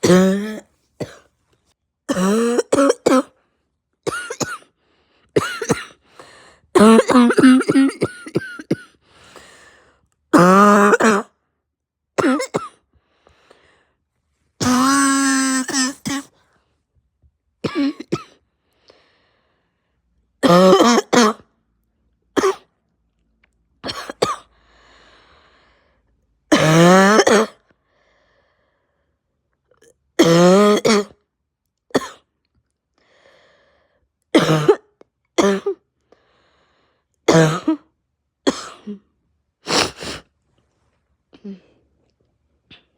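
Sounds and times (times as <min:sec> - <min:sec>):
person coughing harshly: 0:00.0 - 0:01.3, 0:02.1 - 0:03.4, 0:04.1 - 0:04.7, 0:05.4 - 0:06.0, 0:06.8 - 0:09.0, 0:10.4 - 0:11.3, 0:12.2 - 0:12.8, 0:14.6 - 0:16.4, 0:17.6 - 0:18.4, 0:20.4 - 0:21.4, 0:22.4 - 0:22.7, 0:23.8 - 0:24.5, 0:26.5 - 0:27.6, 0:30.2 - 0:31.2, 0:31.9 - 0:32.3, 0:34.4 - 0:35.8, 0:37.3 - 0:37.9, 0:38.5 - 0:39.1.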